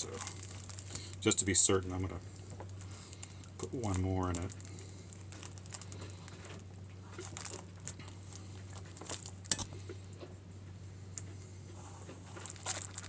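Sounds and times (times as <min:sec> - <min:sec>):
steady low hum: 0:00.0 - 0:13.0
sailcloth and thread rustling: 0:11.7 - 0:13.0.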